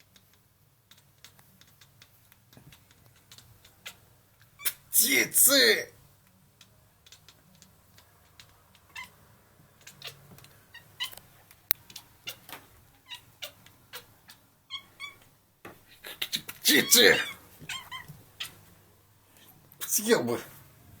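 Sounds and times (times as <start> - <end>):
cat chattering and chirping: 0.9 - 5.0, 6.6 - 18.7.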